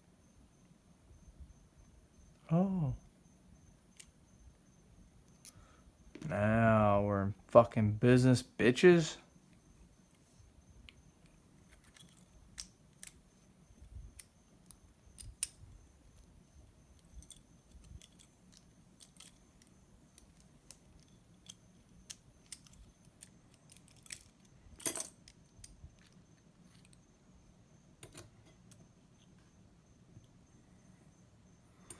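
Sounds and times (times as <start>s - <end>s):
small metal parts clicking: 11.2s - 13.2s, 13.8s - 16.3s, 17.0s - 27.0s.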